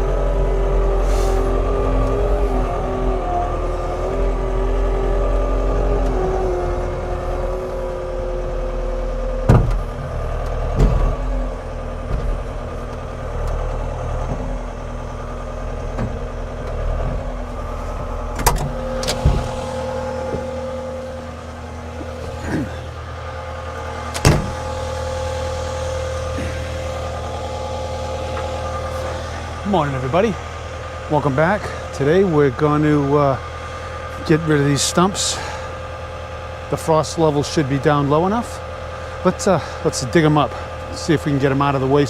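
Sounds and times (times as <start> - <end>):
skid steer engine running: 0.0 - 42.0.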